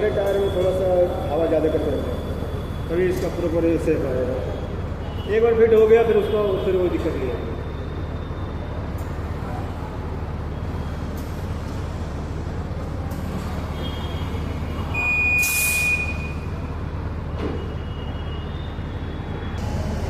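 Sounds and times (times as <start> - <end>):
steady low hum: 18.9 - 20.0.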